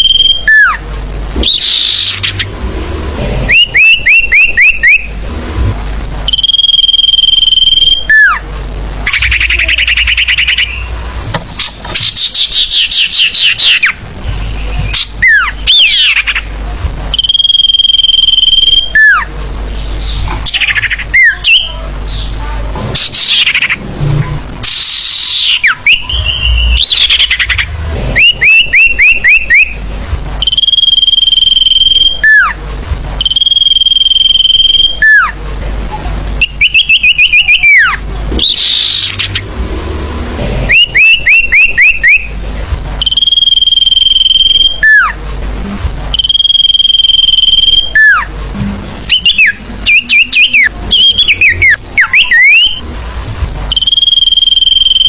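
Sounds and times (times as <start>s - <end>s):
bird call chirps and whistle: 0.0s - 0.8s, 1.4s - 2.5s, 3.5s - 5.1s, 6.3s - 8.4s, 9.0s - 11.0s, 11.6s - 16.5s, 17.1s - 19.3s, 20.0s - 22.3s, 23.0s - 23.8s, 24.6s - 29.8s, 30.4s - 32.6s, 33.2s - 35.4s, 36.4s - 39.4s, 40.7s - 42.3s, 43.0s - 45.2s, 46.1s - 48.3s, 49.1s - 52.8s, 53.7s - 55.0s.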